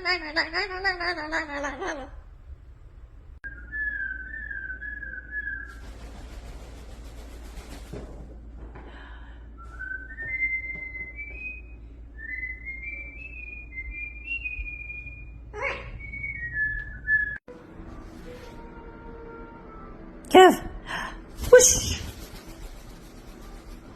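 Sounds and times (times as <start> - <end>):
cockatoo whistling a tune: 3.4 - 5.8, 9.6 - 15.4.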